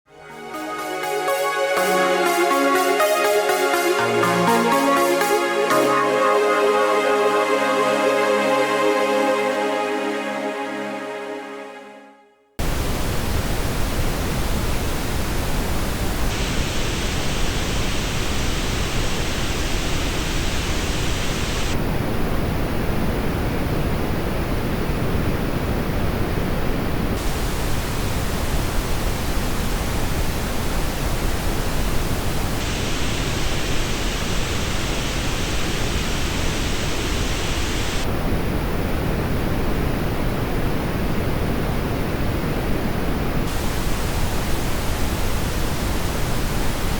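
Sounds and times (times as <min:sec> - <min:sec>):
pink noise hiss: 0:12.6 - 0:46.9.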